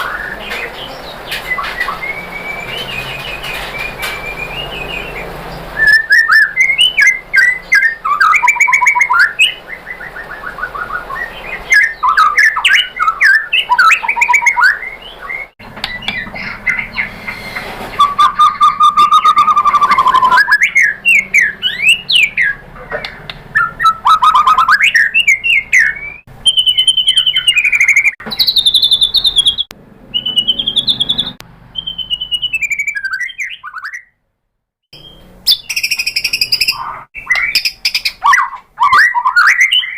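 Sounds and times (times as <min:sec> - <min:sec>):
bird singing trills and whistles: 0:00.0 - 0:34.2, 0:35.0 - 0:39.9.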